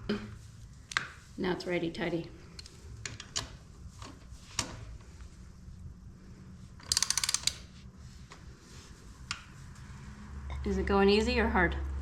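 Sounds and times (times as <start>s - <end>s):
hand ratchet clicking: 6.8s - 7.7s.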